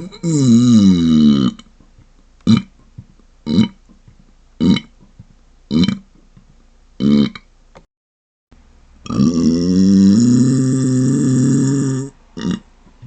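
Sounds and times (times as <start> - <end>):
muffled burps: 0.0 - 1.7, 2.4 - 2.8, 3.4 - 3.9, 4.6 - 5.1, 5.7 - 6.1, 7.0 - 7.5, 9.0 - 12.7.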